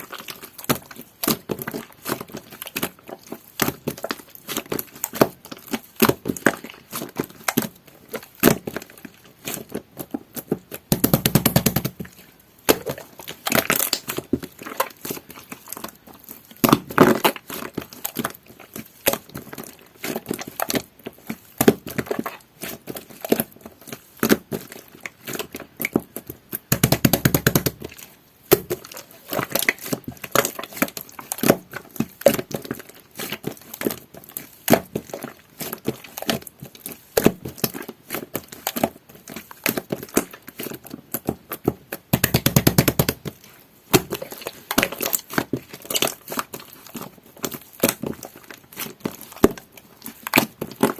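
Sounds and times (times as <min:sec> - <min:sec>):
slime crackling: 0:00.0 - 0:50.9.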